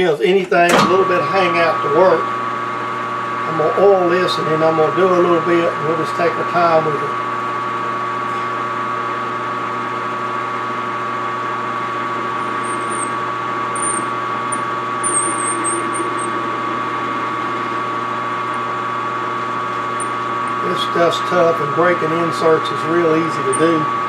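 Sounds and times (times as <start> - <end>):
metal lathe humming and whining: 0.0 - 24.0
high squeaks of cutting tool: 15.0 - 16.3.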